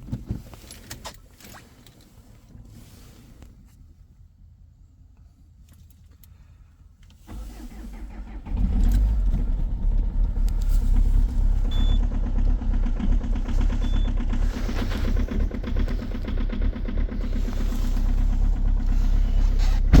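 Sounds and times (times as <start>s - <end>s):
starter motor cranking: 7.3s - 20.0s
diesel engine knocking: 8.7s - 20.0s.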